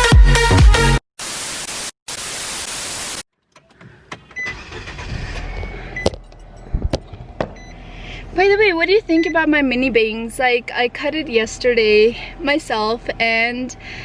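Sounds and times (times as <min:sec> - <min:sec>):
loud static hiss burst: 0:01.2 - 0:03.3
sharp clicks and knocks: 0:06.0 - 0:07.6.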